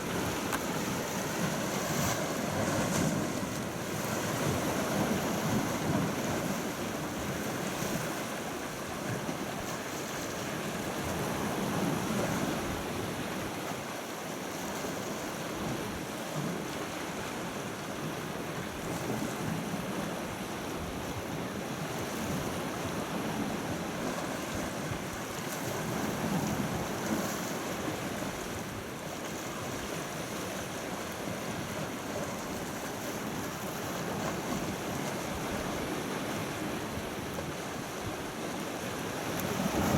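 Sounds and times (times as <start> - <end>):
sea water washing: 0.0 - 13.4.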